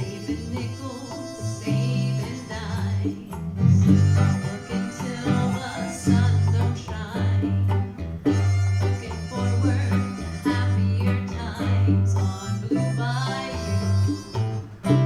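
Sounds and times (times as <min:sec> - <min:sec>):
live band guitar music: 0:00.0 - 0:15.0
low bass notes: 0:00.0 - 0:15.0.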